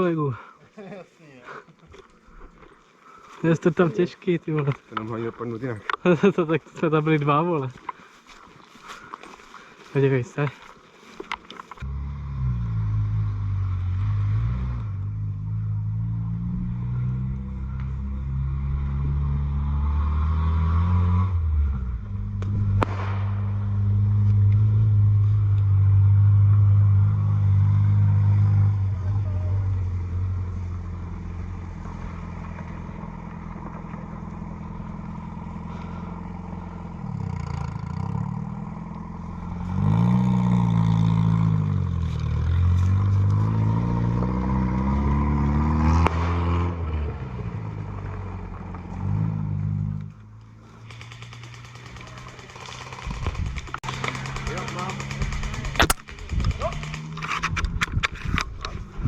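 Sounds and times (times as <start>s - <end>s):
vehicle engine changing speed: 11.7s - 59.0s
sharp clicks: 50.0s - 58.8s.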